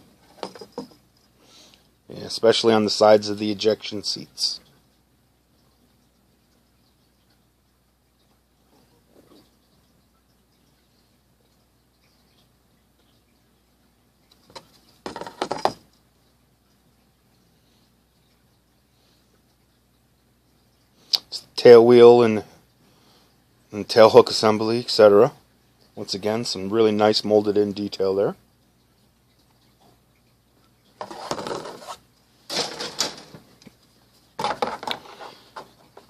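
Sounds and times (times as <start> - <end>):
low hum and hiss: 0.0 - 36.0
plastic sprues rustling and clattering: 31.0 - 33.8, 34.4 - 36.0.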